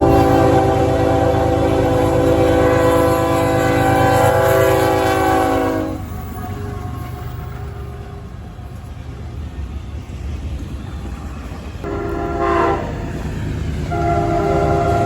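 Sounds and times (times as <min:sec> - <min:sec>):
locomotive air horn chord: 0:00.0 - 0:06.1, 0:11.8 - 0:13.1, 0:13.9 - 0:15.0
train rumbling past: 0:00.0 - 0:15.0.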